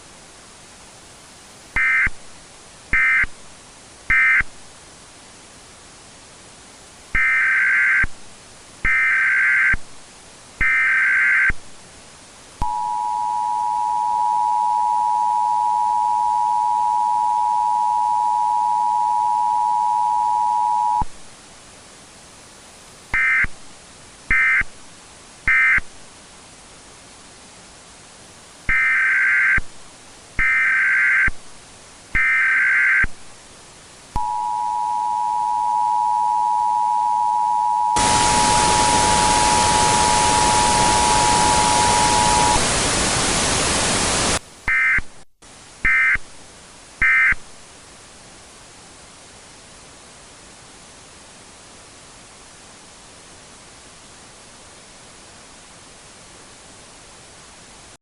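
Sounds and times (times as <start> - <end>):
steady hiss: 0.0 - 58.0
short data bursts: 1.8 - 2.2, 2.9 - 3.3, 4.1 - 4.5, 7.2 - 8.1, 8.8 - 9.8, 10.6 - 11.6, 12.6 - 21.1, 23.1 - 23.6, 24.3 - 24.7, 25.5 - 25.9, 28.7 - 29.7, 30.4 - 31.4, 32.2 - 33.1, 34.2 - 43.2, 44.7 - 45.1, 45.8 - 46.2, 47.0 - 47.4
loud static burst: 7.1 - 11.8, 28.6 - 33.4, 34.1 - 47.6
two-tone attention signal: 12.6 - 21.1, 34.2 - 42.6
screeching data bursts: 34.2 - 42.7.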